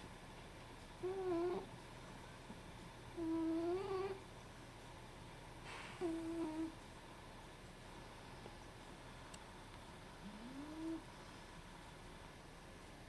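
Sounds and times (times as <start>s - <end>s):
cat snoring: 1.0s - 1.7s, 3.2s - 4.2s, 6.0s - 6.7s, 10.2s - 11.1s.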